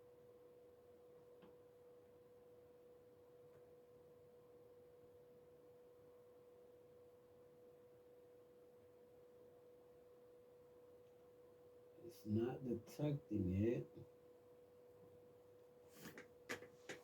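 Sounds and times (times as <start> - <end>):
faint electronic whine: 0.0 - 16.2.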